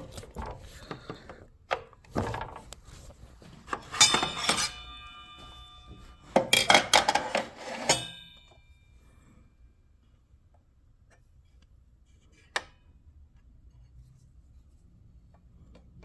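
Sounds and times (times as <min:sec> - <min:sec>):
metal clinking with ringing tone: 0:03.8 - 0:09.0.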